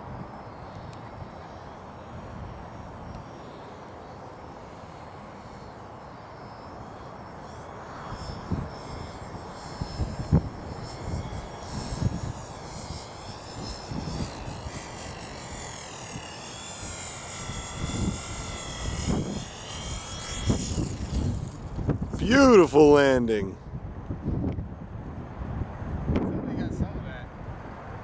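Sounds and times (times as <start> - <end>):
model plane motor whining: 0.0 - 23.4
wind buffeting microphone: 8.2 - 28.0.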